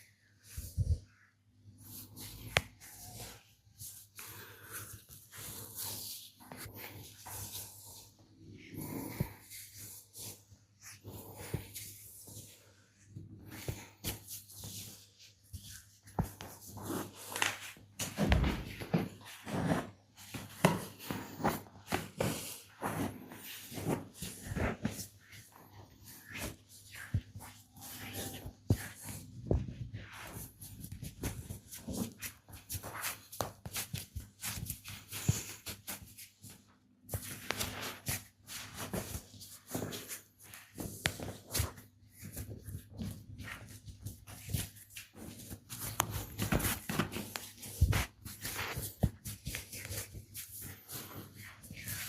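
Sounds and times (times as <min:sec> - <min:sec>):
hands rubbing skin: 0:19.1 - 0:52.0.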